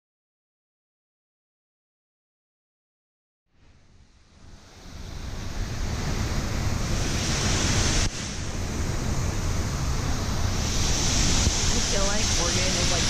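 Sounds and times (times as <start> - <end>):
waterfall rushing: 4.5 - 13.0.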